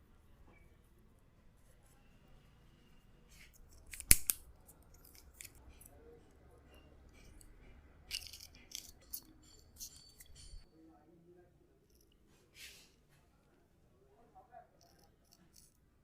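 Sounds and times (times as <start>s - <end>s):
scissors snipping: 3.4s - 5.9s, 7.2s - 10.6s.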